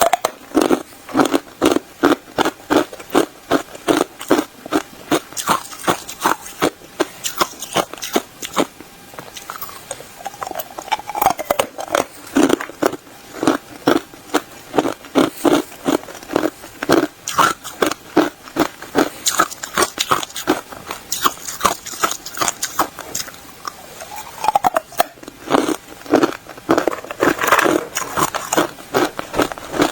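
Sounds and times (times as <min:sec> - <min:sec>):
person crunching ice: 0:09.4 - 0:29.9.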